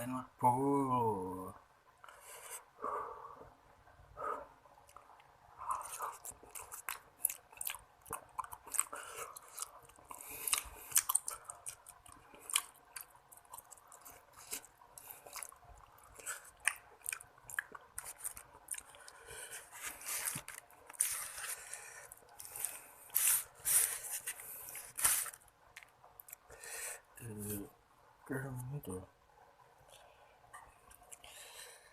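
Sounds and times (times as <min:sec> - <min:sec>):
chewing and slurping: 0:04.8 - 0:25.4.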